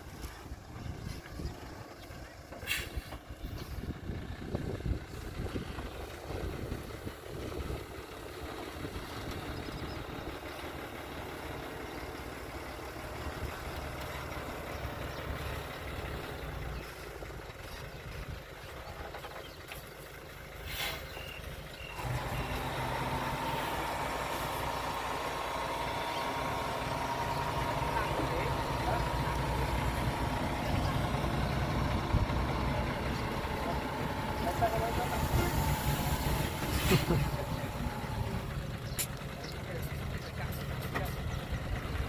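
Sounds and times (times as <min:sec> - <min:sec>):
vehicle engine running: 0:00.0 - 0:42.0.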